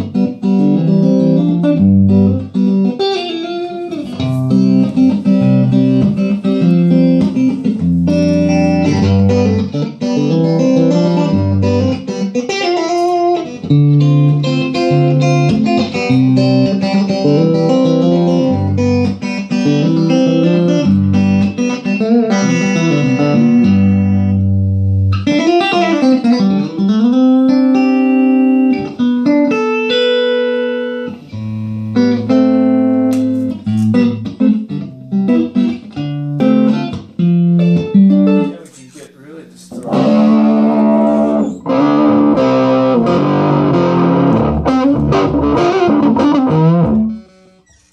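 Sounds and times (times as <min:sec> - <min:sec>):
overdriven electric guitar: 0:00.0 - 0:38.7, 0:39.7 - 0:47.9.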